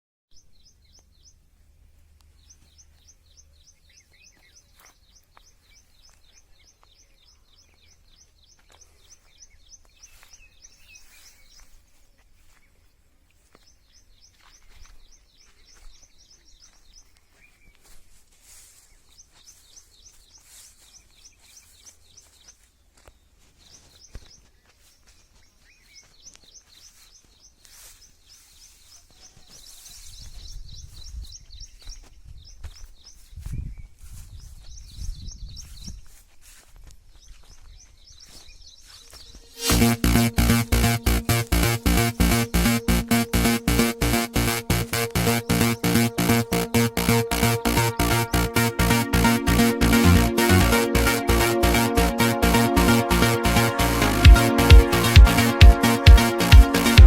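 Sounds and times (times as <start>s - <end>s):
wind rumble on microphone: 33.3s - 36.0s.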